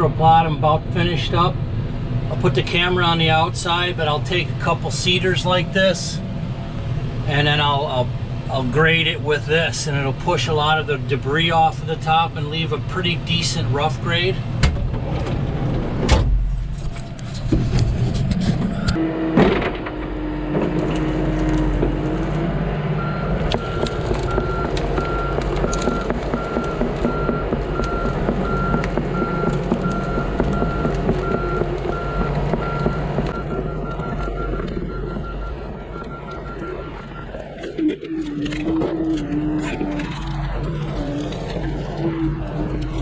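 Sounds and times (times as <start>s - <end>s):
excavator diesel engine: 0.0s - 43.0s
steady whine: 18.2s - 43.0s
travel alarm beeping: 23.0s - 38.7s.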